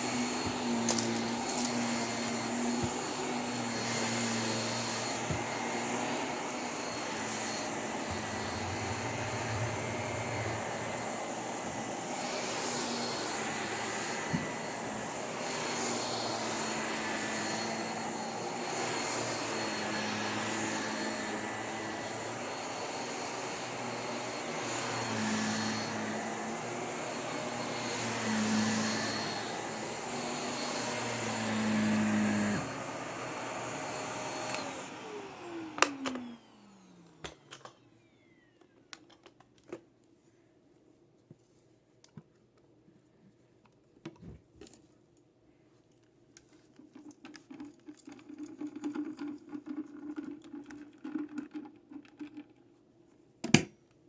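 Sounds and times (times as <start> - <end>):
vacuum cleaner running: 0.0 - 38.8.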